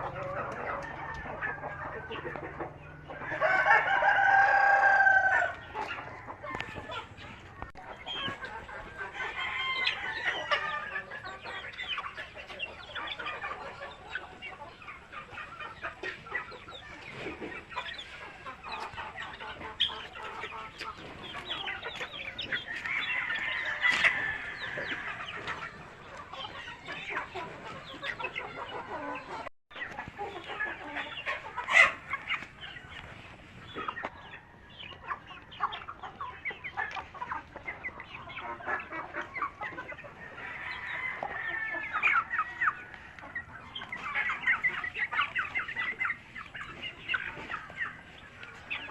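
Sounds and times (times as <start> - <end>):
chickens clucking: 0.0 - 48.9.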